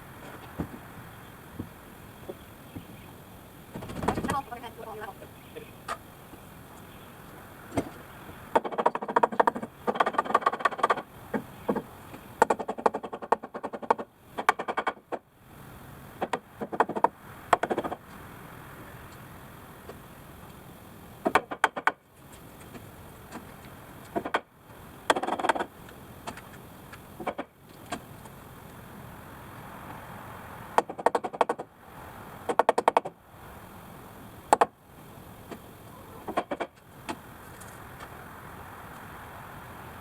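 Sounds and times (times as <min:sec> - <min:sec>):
rapid rattling knocks: 0:03.7 - 0:04.5.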